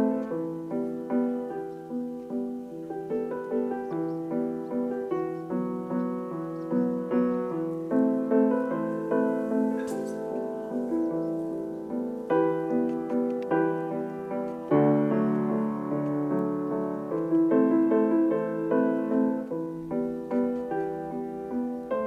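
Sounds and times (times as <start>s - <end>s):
gentle solo piano: 0.0s - 22.0s.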